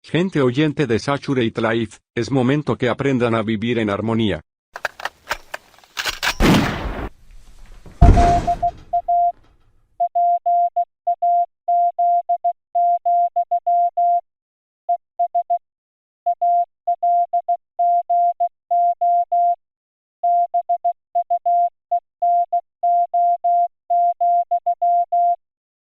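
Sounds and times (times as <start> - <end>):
morse code beeps: 8.2 - 9.3.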